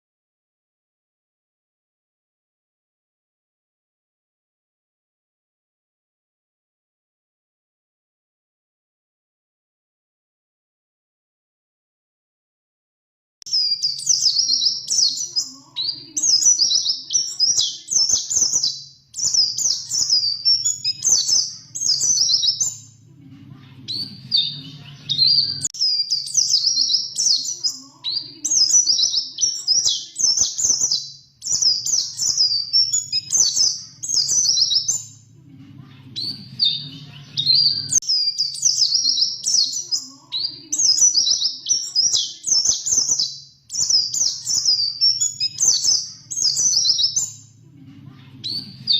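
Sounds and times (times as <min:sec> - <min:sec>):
bird warbling song: 0:13.5 - 0:23.0, 0:23.9 - 0:35.3
faint low hum: 0:19.1 - 0:25.7, 0:33.4 - 0:38.0, 0:47.2 - 0:48.9.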